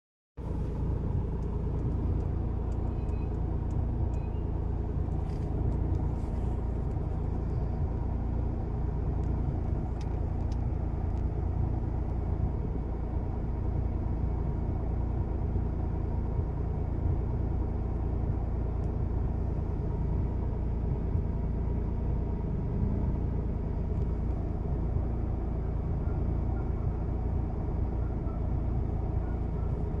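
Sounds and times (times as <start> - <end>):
car engine running: 0.4 - 30.0
faint clicks: 1.3 - 4.3.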